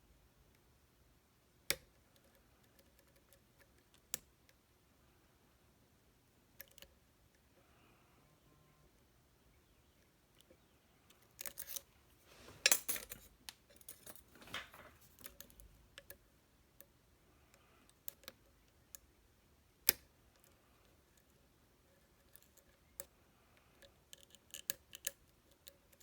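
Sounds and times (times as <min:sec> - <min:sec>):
lock picks clicking and scraping: 0:11.0 - 0:16.2, 0:23.8 - 0:26.0.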